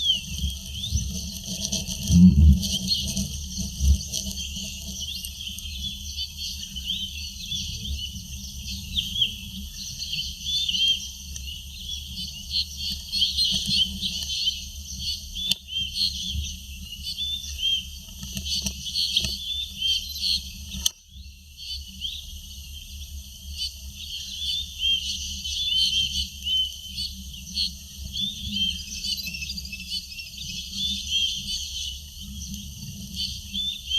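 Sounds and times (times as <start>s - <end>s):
low rumble of wind: 0.0s - 10.4s
birds chirping and twittering: 0.0s - 33.9s.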